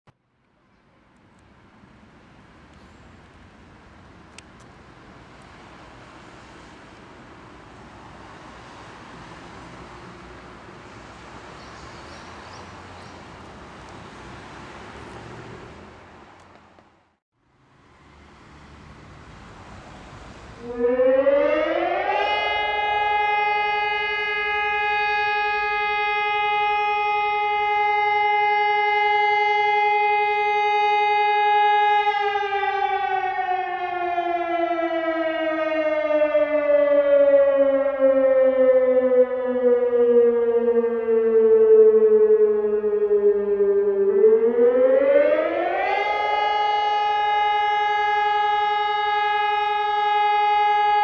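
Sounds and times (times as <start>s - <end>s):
electronic siren alarm: 20.6s - 51.0s.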